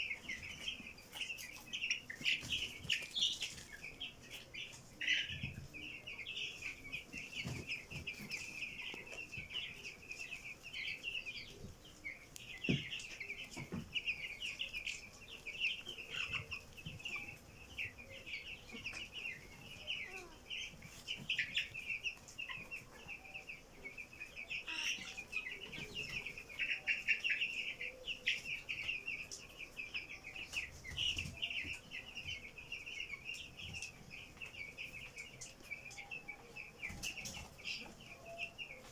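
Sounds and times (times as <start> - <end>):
chickens chirping and peeping: 0.0 - 38.9.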